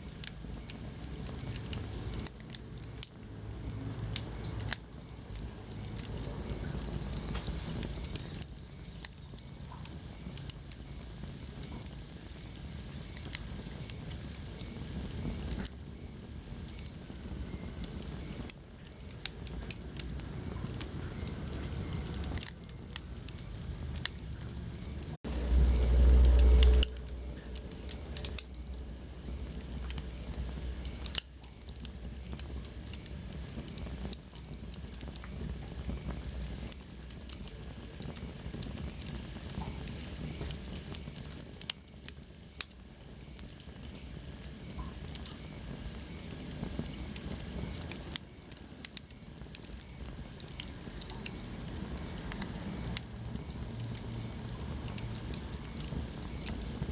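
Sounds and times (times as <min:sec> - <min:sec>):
wood fire crackling and popping: 0:00.0 - 0:56.9
loud low rumble: 0:23.8 - 0:29.2
faint high whistle: 0:24.6 - 0:28.0.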